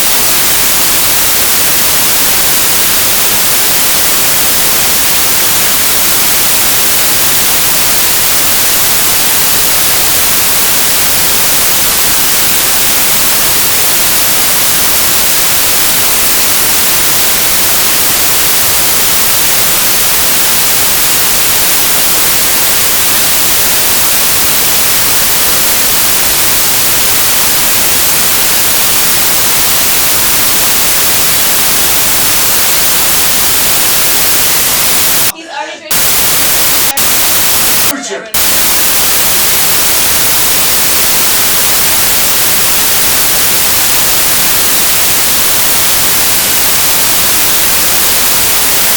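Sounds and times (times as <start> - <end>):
electronic static hiss: 0.0 - 48.9.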